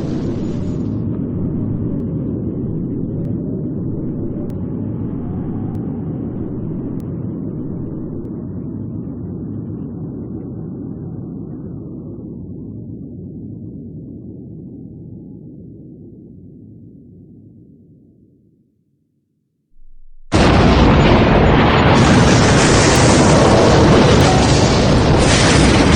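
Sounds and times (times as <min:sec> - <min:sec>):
deep explosion rumble: 0:00.0 - 0:12.4, 0:19.8 - 0:25.9.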